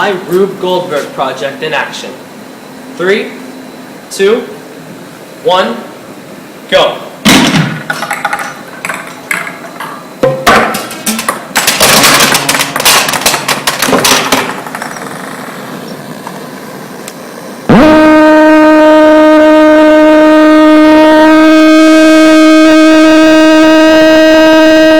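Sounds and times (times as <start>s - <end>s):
theremin tone: 17.7s - 24.9s.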